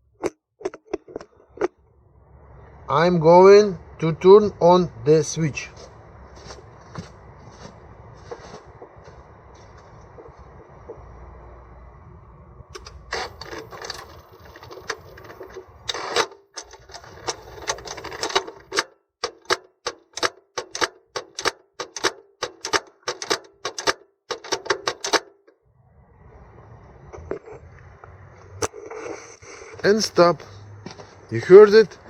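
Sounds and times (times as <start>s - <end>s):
gearbox actuators clicking: 12.6s - 25.6s.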